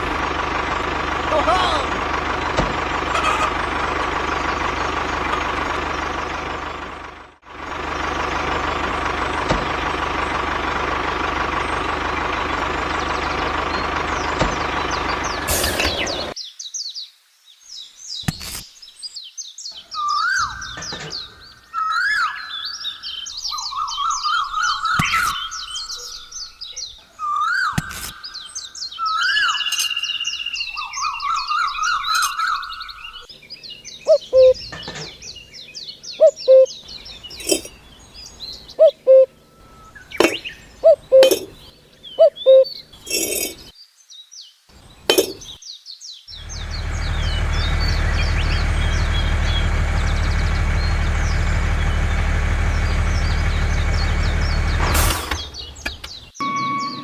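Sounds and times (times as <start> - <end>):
low engine-like drone: 0.0 - 16.4, 28.2 - 43.7, 46.3 - 57.0
bird warbling phrase: 1.3 - 2.0
high bird chirps: 19.7 - 43.8, 45.0 - 57.0.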